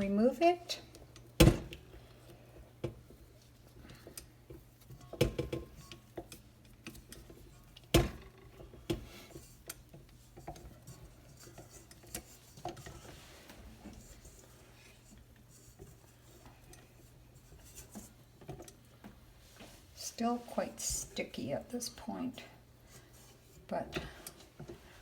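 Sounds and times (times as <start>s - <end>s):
metal bowl knocks and clunks: 5.0s - 6.0s.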